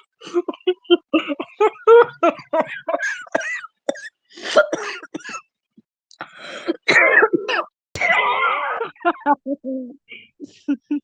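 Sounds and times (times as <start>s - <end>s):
person coughing: 0.2s - 5.4s, 6.7s - 9.0s.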